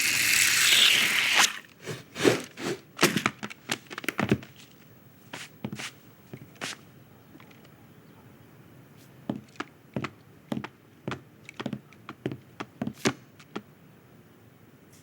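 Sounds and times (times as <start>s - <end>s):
light taps and knocks on wood: 9.3s - 13.6s.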